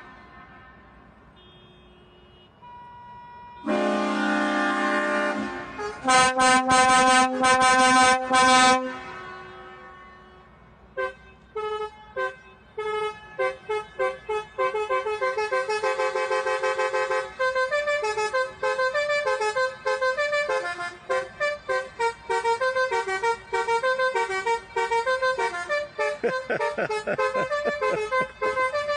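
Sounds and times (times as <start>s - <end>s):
musical vehicle horn: 0.0s - 28.9s.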